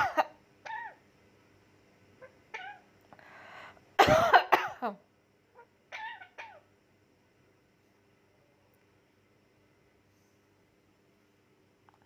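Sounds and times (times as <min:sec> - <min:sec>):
parrot calls: 0:00.0 - 0:01.0, 0:02.2 - 0:02.8, 0:05.5 - 0:06.7
parrot mimicking coughs: 0:00.0 - 0:01.0, 0:04.0 - 0:04.9.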